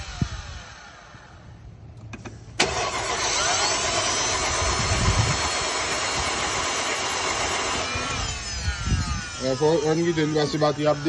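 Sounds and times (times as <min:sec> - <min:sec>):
engine starter cranking: 0:02.0 - 0:08.3.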